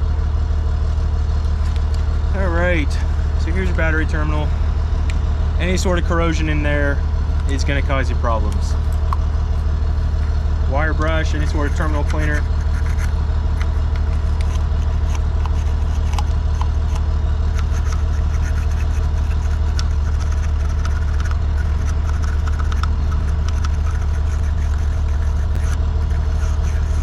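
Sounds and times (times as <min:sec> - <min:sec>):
engine idling drone: 0:00.0 - 0:27.0
wire brush scraping metal: 0:17.5 - 0:27.0.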